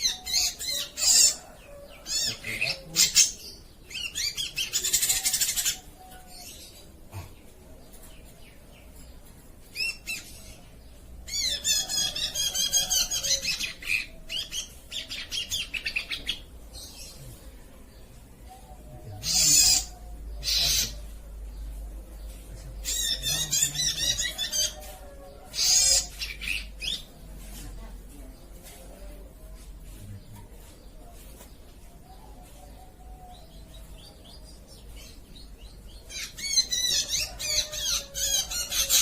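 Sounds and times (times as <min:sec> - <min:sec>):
bird warbling: 0:19.2 - 0:21.1
harsh rasping bird notes: 0:19.2 - 0:21.2.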